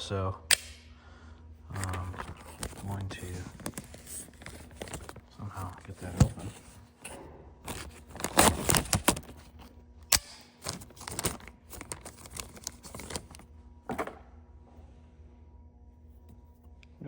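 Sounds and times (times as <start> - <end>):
crackling rustles: 1.8 - 9.7, 10.6 - 13.4.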